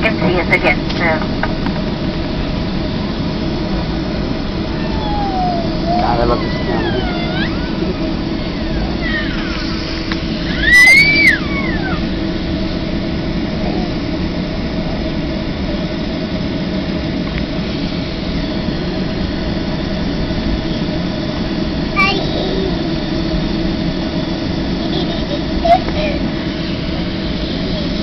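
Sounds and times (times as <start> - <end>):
high voice crying out: 4.8 - 9.6, 10.5 - 12.1.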